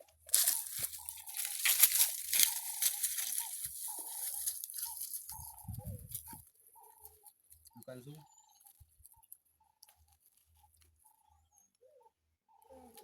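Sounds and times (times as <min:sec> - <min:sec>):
stick scraping dry soil: 0:00.2 - 0:05.5.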